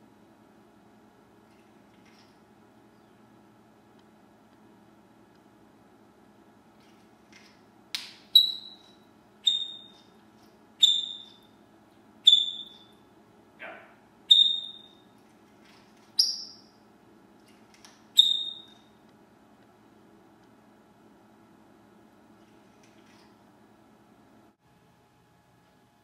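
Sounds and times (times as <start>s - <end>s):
parrot whistling: 8.3s - 10.1s, 10.8s - 11.5s, 12.2s - 13.0s, 14.3s - 15.1s, 16.2s - 16.7s, 18.2s - 18.8s.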